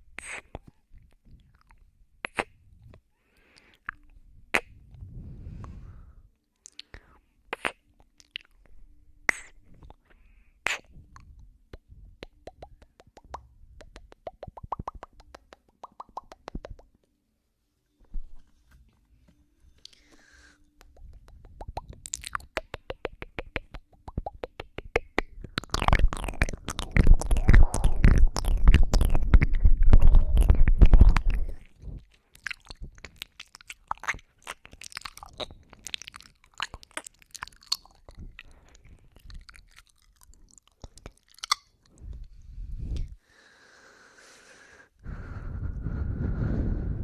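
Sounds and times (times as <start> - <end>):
wet mouth kissing and sucking: 0.2 - 0.7, 1.6 - 2.6, 6.6 - 8.6, 9.3 - 10.0, 10.6 - 16.9, 20.8 - 43.1.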